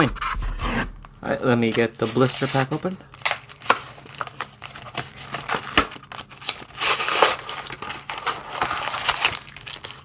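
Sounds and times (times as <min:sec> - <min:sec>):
plastic packaging crackling: 0:01.7 - 0:10.0
plastic tearing rip: 0:03.2 - 0:10.0.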